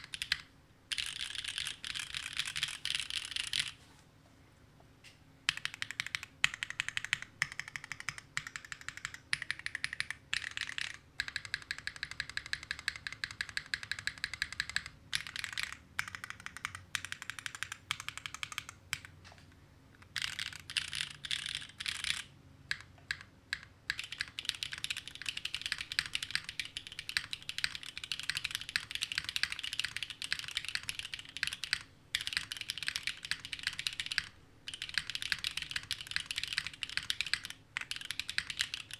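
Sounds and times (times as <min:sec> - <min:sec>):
mechanical keyboard typing: 0:00.0 - 0:03.8, 0:05.5 - 0:19.2, 0:20.0 - 0:38.9.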